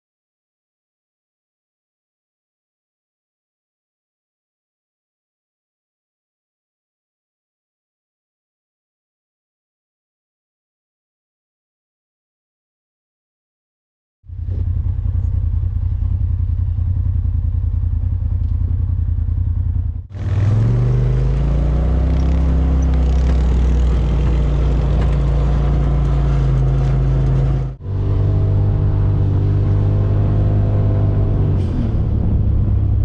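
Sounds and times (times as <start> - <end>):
side-by-side engine running: 14.3 - 33.0.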